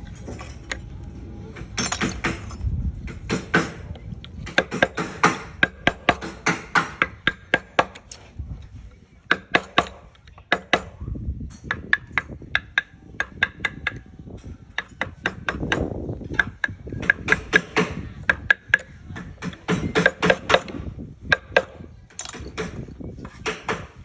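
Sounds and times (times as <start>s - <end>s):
mallet striking chisel: 4.4s - 8.0s, 9.3s - 10.9s, 14.8s - 24.0s.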